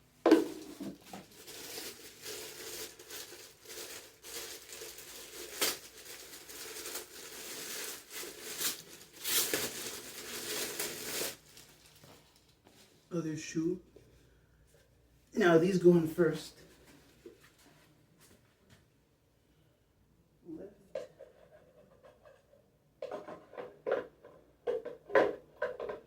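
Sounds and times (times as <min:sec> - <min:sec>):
packaging crinkling and rustling: 0:00.3 - 0:13.1.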